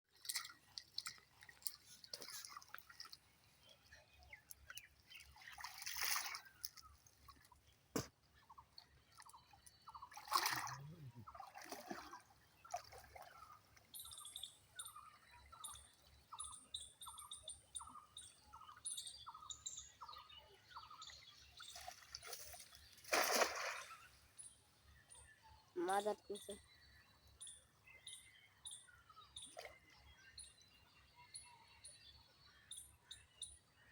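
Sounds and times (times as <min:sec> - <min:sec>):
water drips and splashes: 0:00.1 - 0:14.3, 0:21.6 - 0:24.1.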